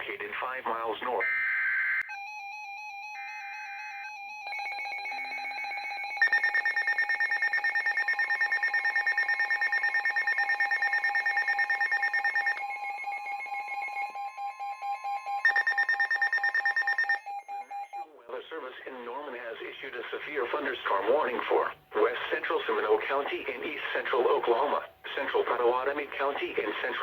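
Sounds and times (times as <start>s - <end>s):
rapidly pulsing electronic alarm: 1.2s - 18.2s.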